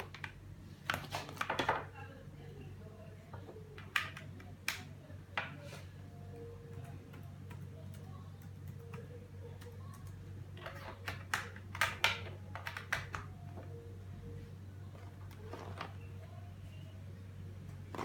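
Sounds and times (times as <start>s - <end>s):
low steady hum: 0.0s - 18.0s
mechanical keyboard clicks: 7.1s - 13.3s.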